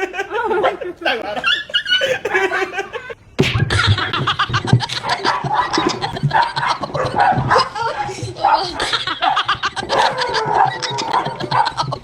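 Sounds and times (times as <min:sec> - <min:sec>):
people talking: 0:00.0 - 0:01.6, 0:07.5 - 0:11.6
people laughing: 0:00.0 - 0:12.0.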